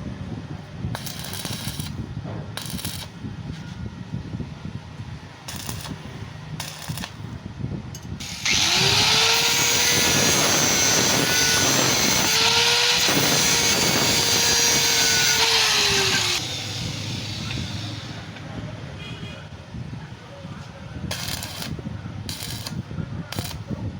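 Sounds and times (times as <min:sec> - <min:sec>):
power tool running with hiss: 0:08.2 - 0:18.4.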